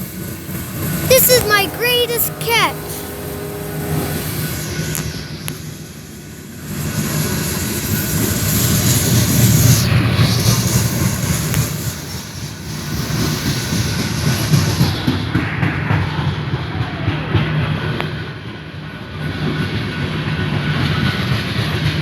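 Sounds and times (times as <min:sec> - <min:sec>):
train wheels rumbling on rail: 0:03.0 - 0:16.3.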